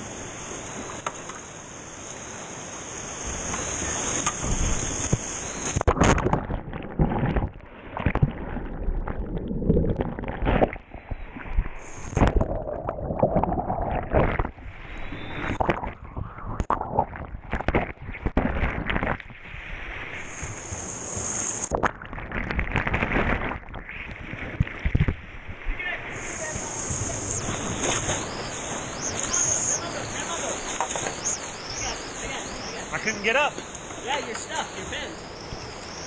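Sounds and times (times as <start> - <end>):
water gurgling: 0.0 - 36.0
whitewater rushing and splashing: 25.6 - 36.0.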